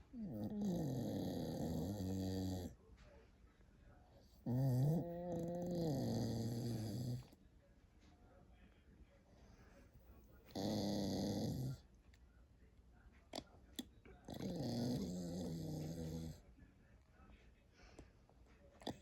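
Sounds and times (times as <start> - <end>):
dog snoring: 0.1 - 2.8, 4.4 - 7.3, 10.5 - 11.8, 14.2 - 16.4.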